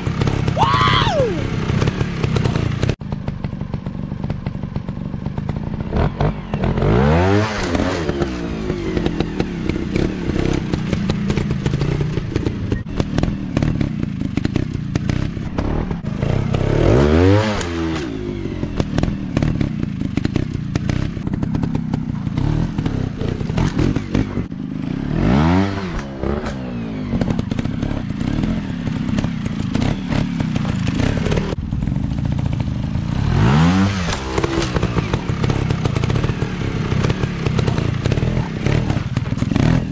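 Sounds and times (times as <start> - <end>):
dirt bike engines revving: 0.0 - 3.0, 5.4 - 39.9.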